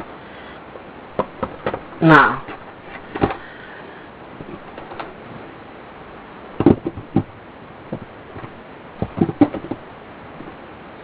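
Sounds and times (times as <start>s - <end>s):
steady background hiss: 0.0s - 11.0s
light knocks and clicks: 7.9s - 9.8s.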